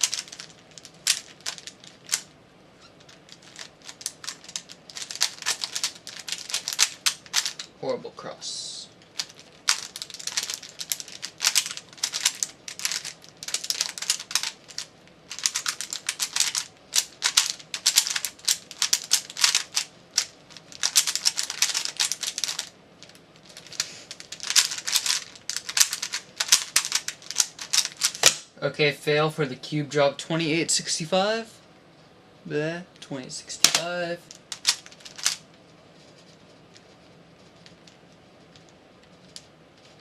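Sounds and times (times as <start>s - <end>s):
puzzle cube clicking: 3.3s - 7.7s, 9.2s - 22.7s, 23.5s - 28.4s.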